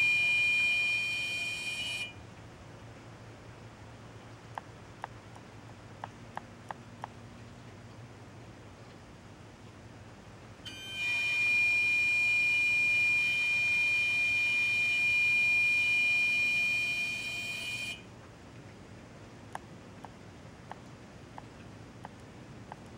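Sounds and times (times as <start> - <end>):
high-pitched tone: 0.0 - 2.1, 10.7 - 18.0
faint ticks: 4.2 - 8.1, 19.4 - 22.9.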